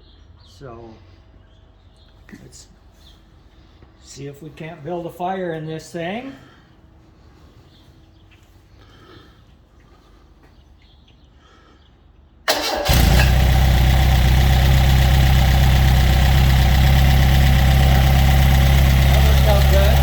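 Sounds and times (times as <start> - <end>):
engine starting and running: 12.5 - 20.0.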